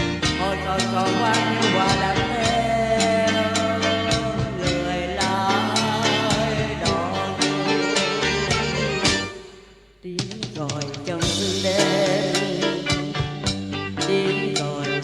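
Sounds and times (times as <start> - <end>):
wavering lead melody: 0.0 - 9.4
held bass notes: 0.0 - 9.5, 11.2 - 15.0
drum hits: 0.0 - 14.7.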